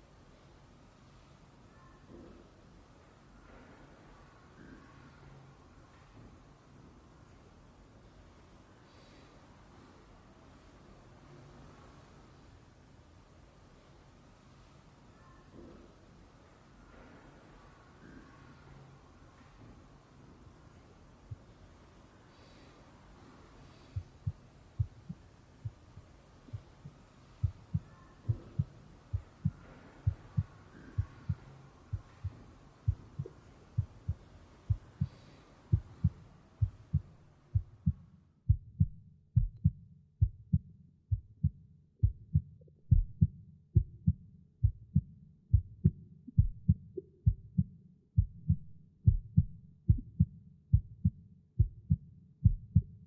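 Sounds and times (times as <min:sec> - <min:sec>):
faint background hiss: 0:00.0 - 0:53.0
soft low thumps: 0:24.0 - 0:53.0.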